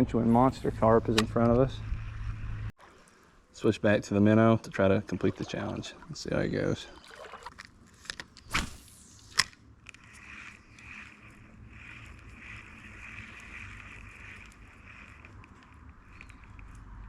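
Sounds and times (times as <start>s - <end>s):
reel click: 7.6s - 17.0s
fishing reel whirring: 8.4s - 17.0s
fishing rod swish: 8.5s - 9.4s.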